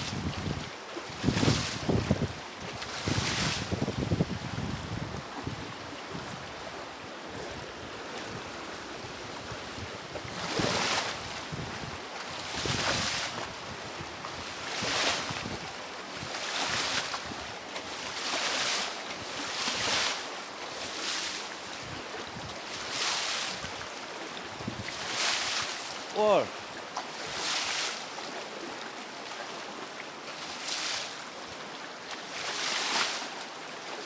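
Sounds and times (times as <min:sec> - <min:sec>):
wind buffeting microphone: 0:00.0 - 0:02.4, 0:03.0 - 0:06.6
waves splashing: 0:24.9 - 0:28.0
river water rushing: 0:25.3 - 0:26.7.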